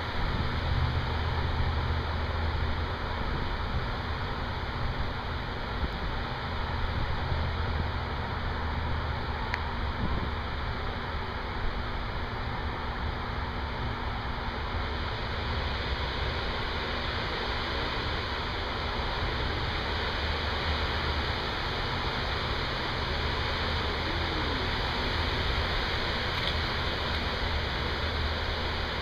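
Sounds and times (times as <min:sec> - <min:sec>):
heavy rain falling: 0:19.0 - 0:29.0.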